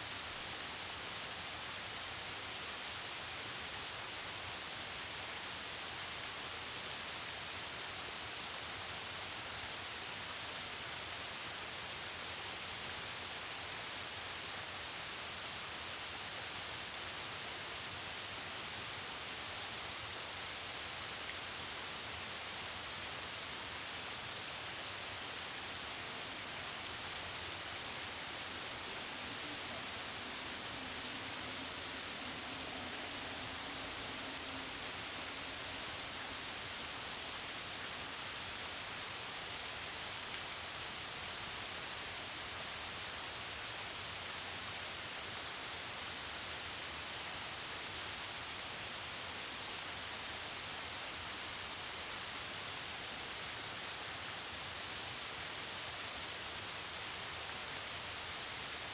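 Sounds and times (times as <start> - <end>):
waterfall rushing down rocks: 0.0 - 58.9.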